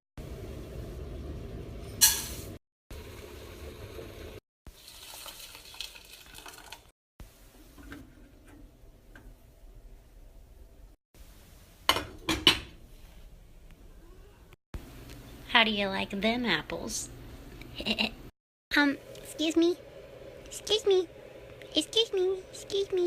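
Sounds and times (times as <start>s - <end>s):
steady sizzle: 0.2s - 9.5s, 18.7s - 23.0s.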